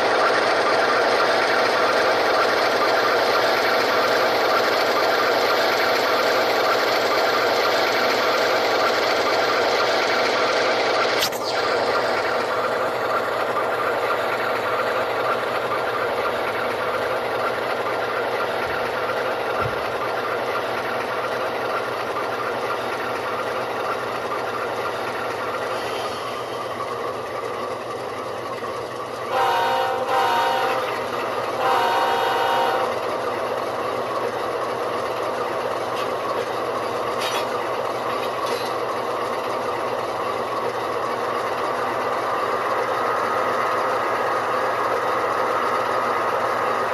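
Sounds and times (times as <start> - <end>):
model diesel engine sound: 0.0 - 46.9
train horn blasts: 29.3 - 33.0.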